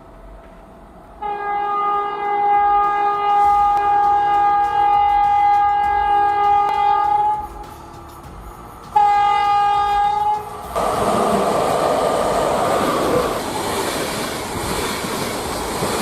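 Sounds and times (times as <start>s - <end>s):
train horn blasts: 1.2s - 7.7s, 8.9s - 10.7s.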